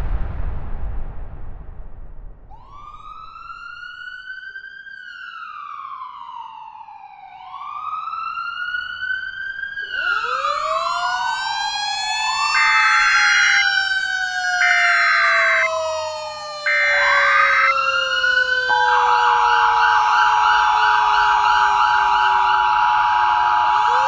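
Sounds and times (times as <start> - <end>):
sirens gliding up and down: 7.9 - 24.0
fast warbling siren: 9.8 - 24.0
short steady tone blasts: 12.6 - 13.7, 14.6 - 15.7, 16.7 - 17.8
steady alert tone: 12.6 - 13.7, 14.6 - 15.8, 16.6 - 17.7.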